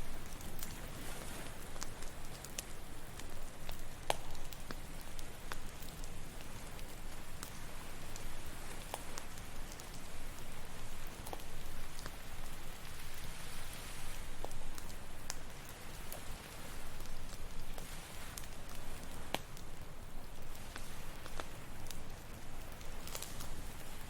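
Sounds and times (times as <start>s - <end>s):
ocean waves: 0.0s - 2.6s, 12.2s - 24.0s
campfire crackling: 0.0s - 24.0s.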